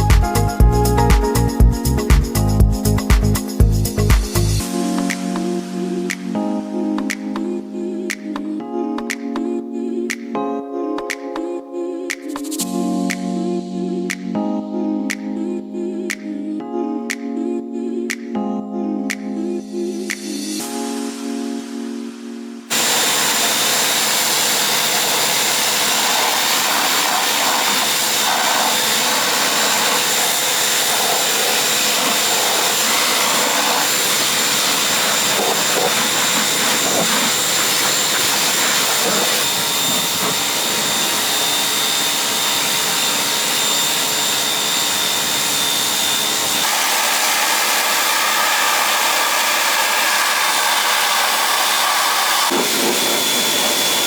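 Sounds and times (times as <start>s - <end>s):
machine rushing with high whine: 22.7s - 54.0s.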